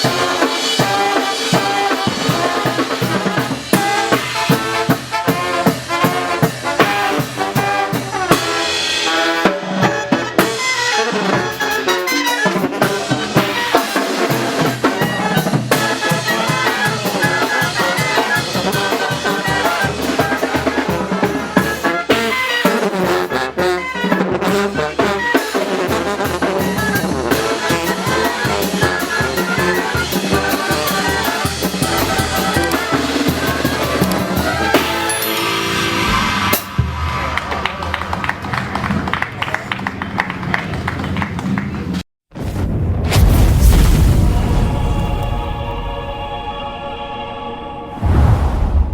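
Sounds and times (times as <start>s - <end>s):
driving drums: 0.0s - 35.2s
trumpets and brass playing: 0.0s - 37.2s.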